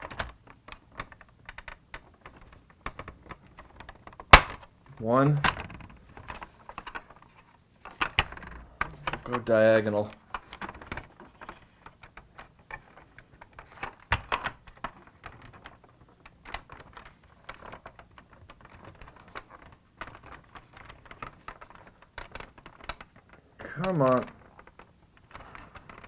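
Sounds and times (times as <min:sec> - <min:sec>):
plastic toy parts clicking: 0:05.3 - 0:26.0.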